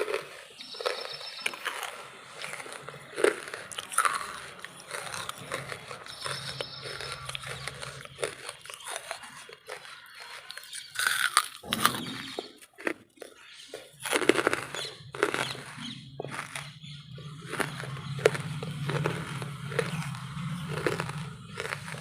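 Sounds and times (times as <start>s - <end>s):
sharp loud bite: 0.0s - 13.0s
charcoal crunching when chewed: 0.0s - 22.0s.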